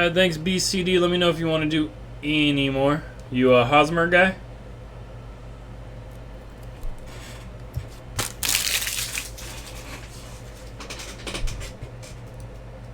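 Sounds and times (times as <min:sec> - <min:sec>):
low electrical hum: 0:00.0 - 0:12.9
packaging crinkling: 0:07.9 - 0:10.8.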